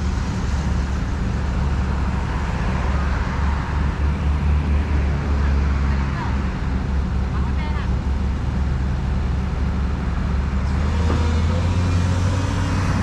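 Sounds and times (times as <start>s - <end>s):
heavy diesel machinery droning: 0.0s - 13.0s.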